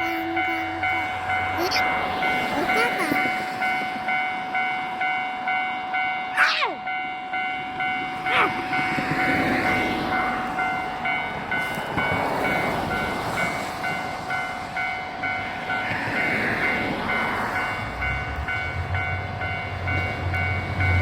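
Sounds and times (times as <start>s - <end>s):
level crossing bell ringing: 0.0s - 9.6s
train rumbling past: 0.0s - 21.0s.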